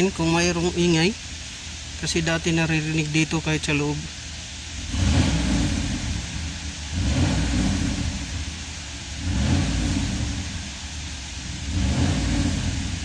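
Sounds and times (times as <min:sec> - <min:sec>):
engine revving: 0:04.8 - 0:13.0.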